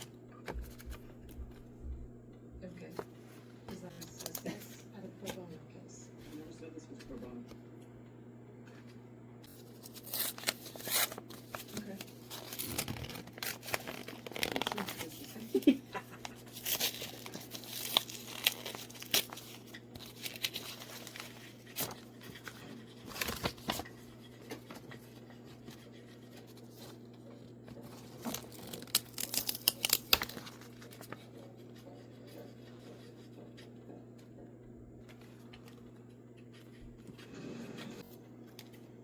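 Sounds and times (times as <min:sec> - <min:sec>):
steady low hum: 0:00.0 - 0:39.0
packaging being torn open: 0:09.7 - 0:15.3, 0:16.3 - 0:22.0, 0:28.1 - 0:31.0.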